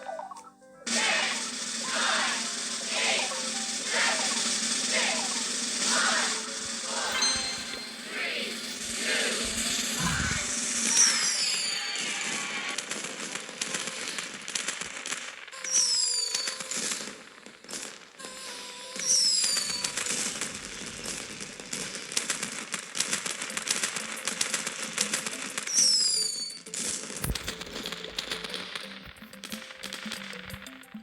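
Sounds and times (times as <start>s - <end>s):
falling firework whistles: 0.9s - 23.5s, 24.9s - 28.0s
fireworks crackling: 0.9s - 31.0s.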